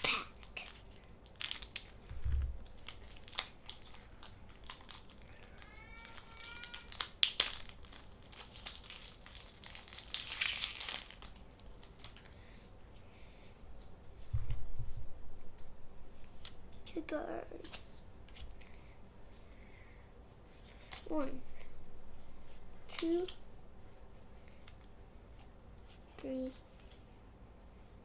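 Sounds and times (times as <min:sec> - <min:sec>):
foil wrapper crinkling and tearing: 0:00.0 - 0:12.3.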